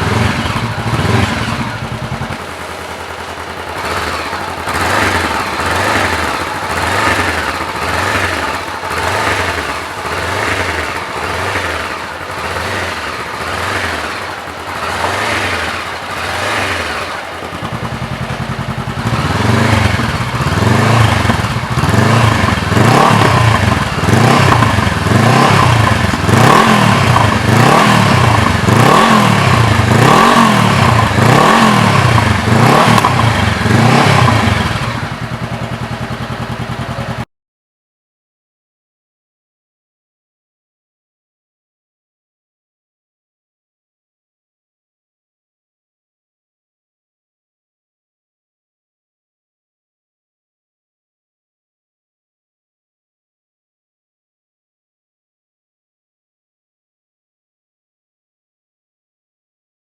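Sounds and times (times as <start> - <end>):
motorcycle engine revving: 0.0 - 37.3.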